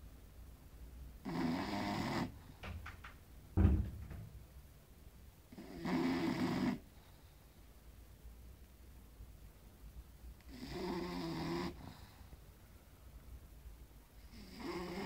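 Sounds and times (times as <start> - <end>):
small dog snoring: 1.2 - 2.4, 5.5 - 6.9, 10.4 - 12.2, 14.2 - 15.0
low thump: 2.6 - 4.5.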